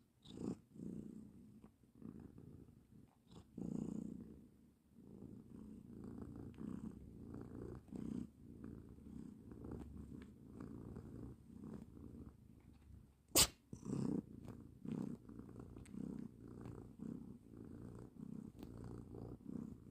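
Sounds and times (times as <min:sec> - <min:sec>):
cat snoring: 0:05.0 - 0:12.4, 0:13.4 - 0:19.9
sharp click: 0:13.4 - 0:13.6.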